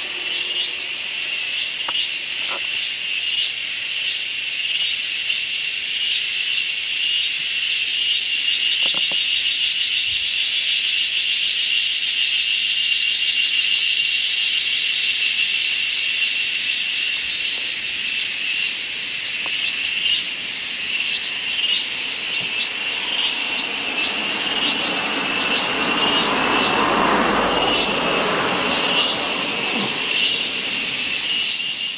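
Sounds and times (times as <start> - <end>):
insect chorus: 0.0 - 31.9.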